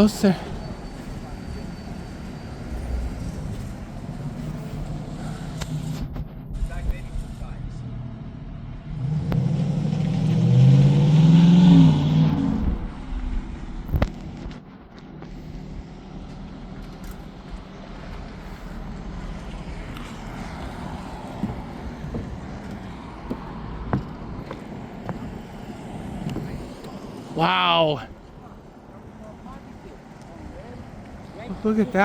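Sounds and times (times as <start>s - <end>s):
outdoor background noise: 0.0s - 32.0s
car driving past: 6.6s - 13.8s.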